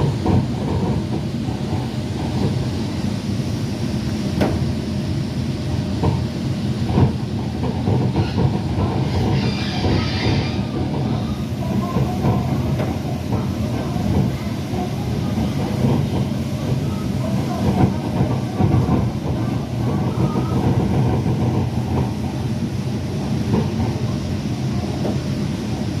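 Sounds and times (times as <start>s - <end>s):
monorail train rumbling: 0.0s - 26.0s.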